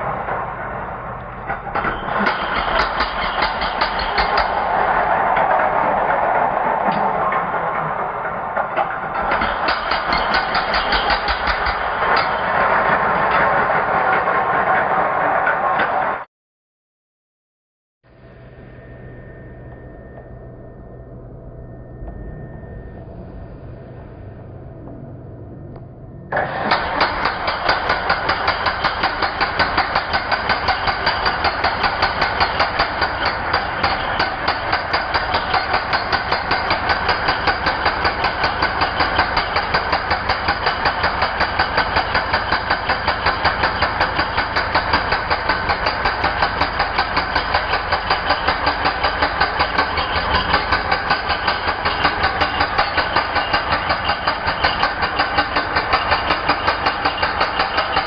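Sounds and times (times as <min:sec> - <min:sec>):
demolition hammer hammering: 0:01.5 - 0:14.5, 0:26.4 - 0:58.0.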